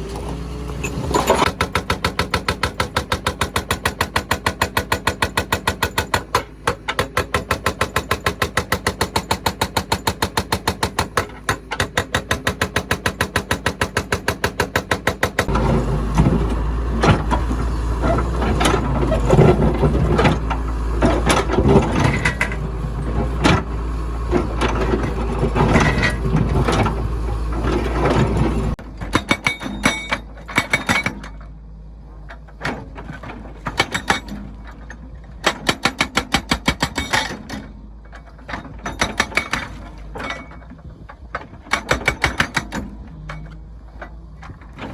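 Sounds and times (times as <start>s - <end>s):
machinery knocks and clanks: 0.1s - 31.4s
heavy machinery engine knocking: 1.5s - 28.8s
deep machine hum: 15.5s - 28.8s.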